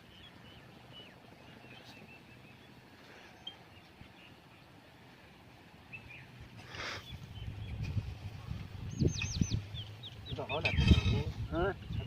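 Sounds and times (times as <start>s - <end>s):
faint bird chirps: 0.0s - 4.7s, 8.4s - 11.2s.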